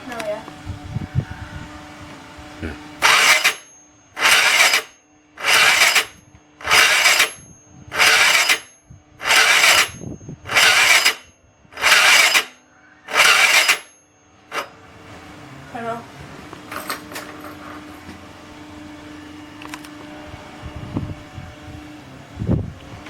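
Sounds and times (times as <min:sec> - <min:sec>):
electric starter cranking: 0:03.0 - 0:14.8.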